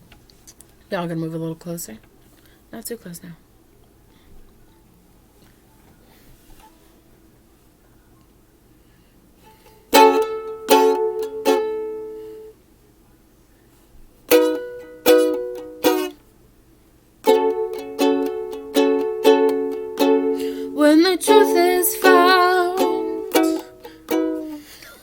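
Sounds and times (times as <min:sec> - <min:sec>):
ukulele strumming chords: 0:09.5 - 0:12.5, 0:14.3 - 0:16.2, 0:17.2 - 0:24.8.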